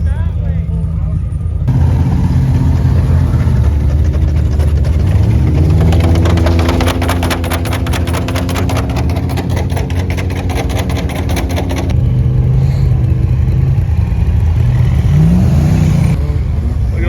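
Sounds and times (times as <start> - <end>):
truck engines running: 0.0 - 17.0
engine revving: 1.7 - 17.0
fast regular ticking: 2.4 - 12.0.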